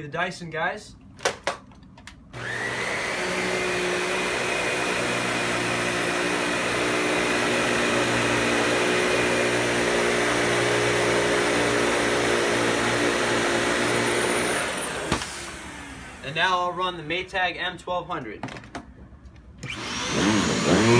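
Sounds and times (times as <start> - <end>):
vacuum cleaner motor whine: 2.4 - 16.7, 19.6 - 20.9.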